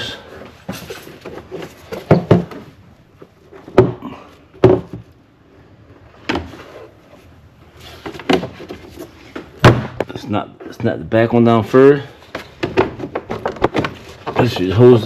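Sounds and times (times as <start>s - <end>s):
plastic cover knocks and thumps: 1.3s - 2.7s, 3.7s - 5.1s, 9.6s - 10.1s, 12.5s - 14.8s.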